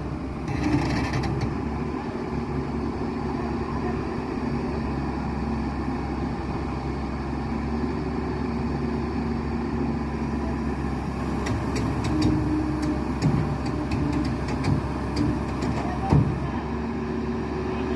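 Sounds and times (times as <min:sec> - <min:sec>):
excavator diesel engine running: 0:00.0 - 0:17.9
sharp clicks and knocks: 0:00.5 - 0:01.6, 0:11.4 - 0:16.4.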